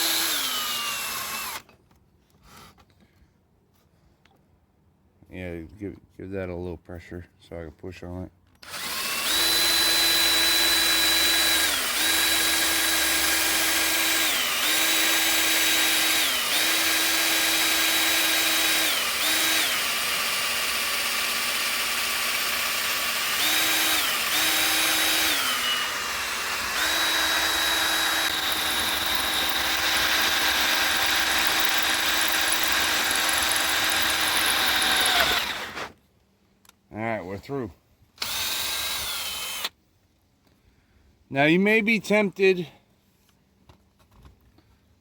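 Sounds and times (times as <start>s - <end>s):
electric drill whine: 0.0s - 1.7s, 8.6s - 35.9s, 38.2s - 39.7s.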